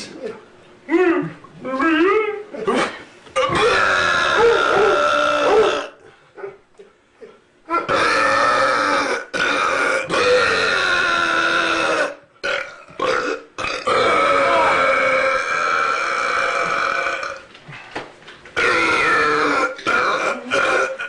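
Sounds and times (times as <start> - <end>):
person belching loudly: 2.7 - 6.0, 7.7 - 17.4, 18.6 - 21.0.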